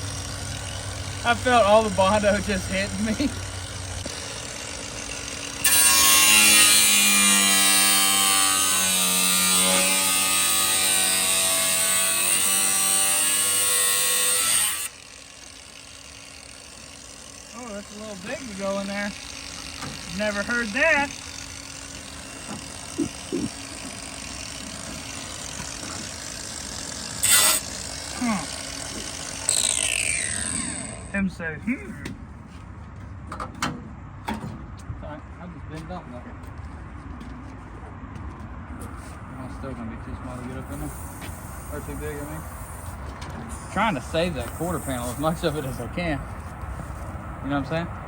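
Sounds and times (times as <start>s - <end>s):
power tool cutting sheet metal: 0.0s - 31.2s, 40.5s - 46.2s
workshop background hum: 0.0s - 48.0s
loud burst of hiss: 40.8s - 43.0s, 43.8s - 45.9s.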